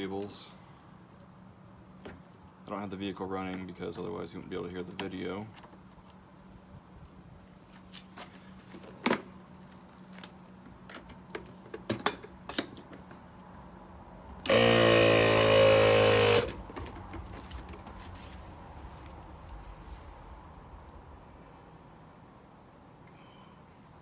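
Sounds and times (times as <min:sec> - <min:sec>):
air compressor motor hissing: 0:14.4 - 0:16.6.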